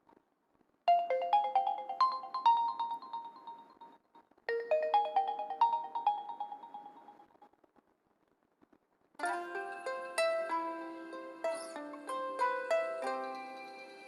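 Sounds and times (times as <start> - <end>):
ringtone melody: 0.9 - 3.8, 4.5 - 7.2, 9.2 - 14.0.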